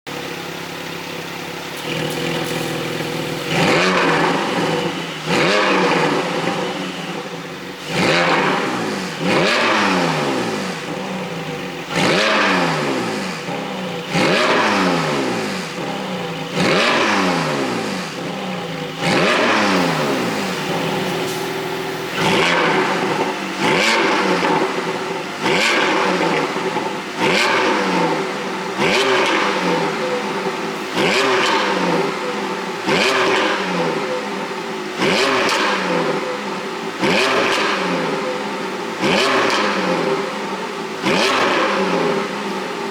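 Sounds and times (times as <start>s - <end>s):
car engine idling and revving: 0.0s - 42.9s
exhaust pops and crackles: 1.7s - 4.7s.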